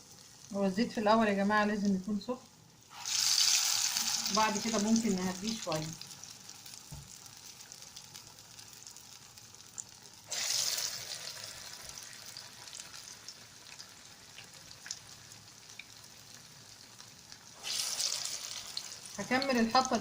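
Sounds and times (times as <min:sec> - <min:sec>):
patties sizzling in oil: 0:00.0 - 0:20.0
loud burst of sizzling: 0:02.9 - 0:05.9, 0:10.2 - 0:12.4, 0:17.6 - 0:19.6.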